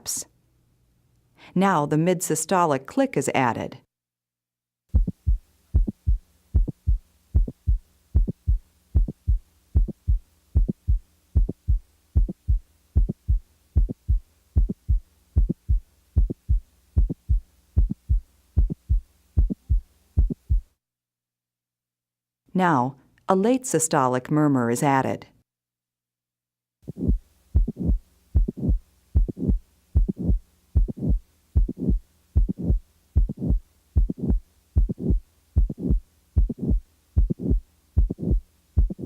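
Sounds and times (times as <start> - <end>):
heart valve click: 4.9 - 20.7, 26.9 - 39.0
heartbeat through a stethoscope: 4.9 - 20.8, 26.9 - 39.0.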